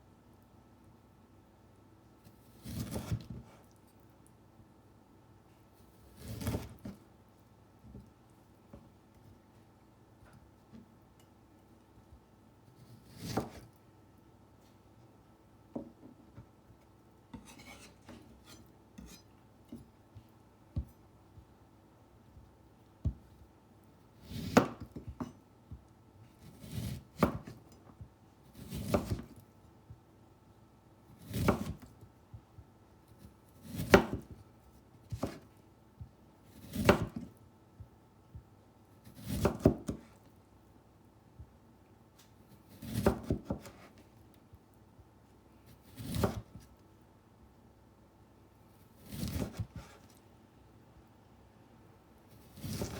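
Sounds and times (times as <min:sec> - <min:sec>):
knife cutting lemon on board: 0:02.3 - 0:03.6, 0:06.0 - 0:07.0, 0:12.7 - 0:13.8, 0:17.3 - 0:19.8, 0:24.2 - 0:25.4, 0:26.4 - 0:27.7, 0:28.4 - 0:29.4, 0:31.1 - 0:32.0, 0:33.1 - 0:34.4, 0:35.0 - 0:35.5, 0:36.5 - 0:37.3, 0:39.0 - 0:40.2, 0:42.5 - 0:44.0, 0:45.7 - 0:46.8, 0:49.0 - 0:50.2, 0:52.3 - 0:52.9.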